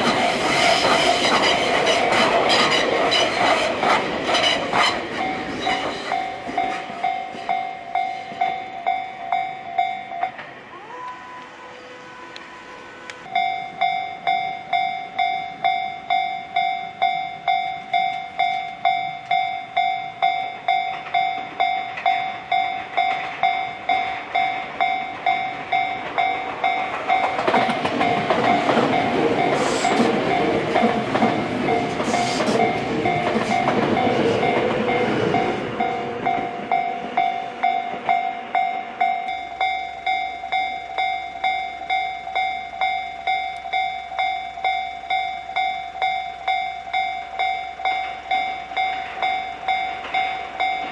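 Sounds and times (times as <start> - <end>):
train wheels clattering over rail joints: 0.0 - 8.6, 25.6 - 38.2
level crossing alarm ringing: 4.5 - 50.9.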